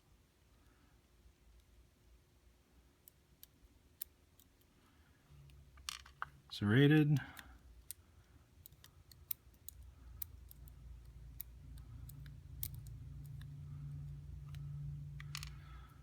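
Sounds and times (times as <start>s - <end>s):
low steady hum: 0.0s - 16.0s
small metallic clicks: 3.0s - 4.7s, 7.1s - 16.0s.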